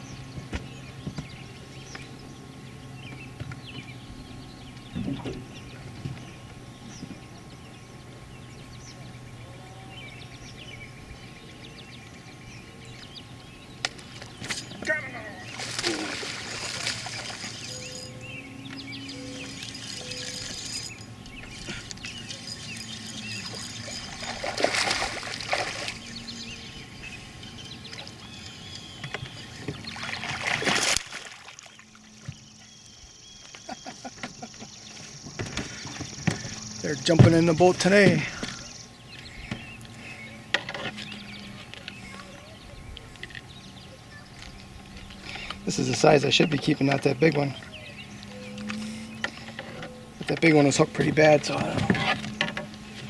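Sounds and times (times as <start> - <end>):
steady low hum: 0.0 - 30.8
small birds chirping: 0.0 - 53.0
water splashing around boat: 0.4 - 7.3, 13.8 - 32.6, 39.8 - 53.0
loud splashes: 15.5 - 17.6, 24.2 - 26.0, 29.9 - 31.6.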